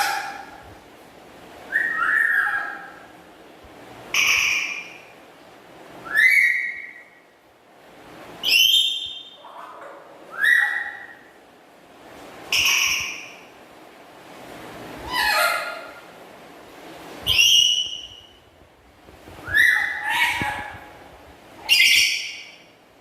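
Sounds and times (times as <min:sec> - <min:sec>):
bird giving whistled calls: 0:01.7 - 0:02.8, 0:06.1 - 0:07.1, 0:08.4 - 0:09.4, 0:10.3 - 0:11.1, 0:17.3 - 0:18.3, 0:19.4 - 0:20.4, 0:21.6 - 0:22.5.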